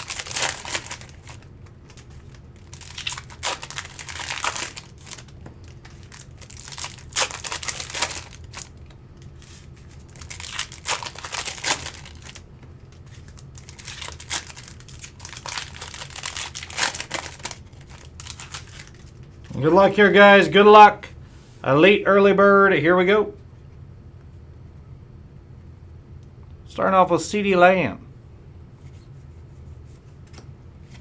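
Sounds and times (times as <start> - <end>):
wrappers torn open and crinkled: 0.0 - 19.3.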